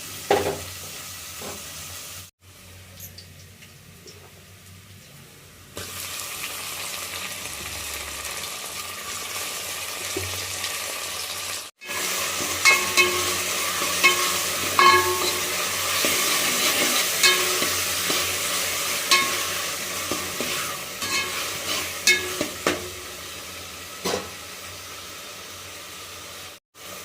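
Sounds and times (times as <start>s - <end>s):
food sizzling in hot oil: 0.0s - 2.3s, 5.8s - 27.0s
metal spatula scraping a pan: 11.8s - 23.0s.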